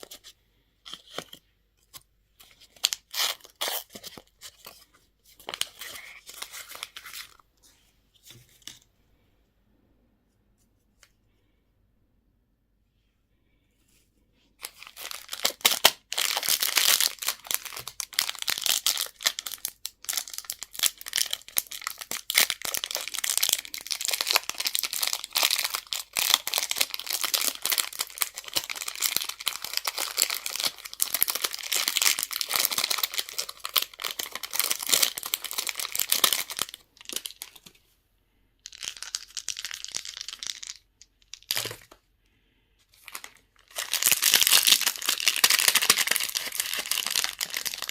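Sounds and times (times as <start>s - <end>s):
candy wrappers crinkling and tearing: 2.4s - 4.8s, 5.4s - 7.4s, 14.6s - 37.7s, 38.6s - 41.9s, 43.0s - 47.9s.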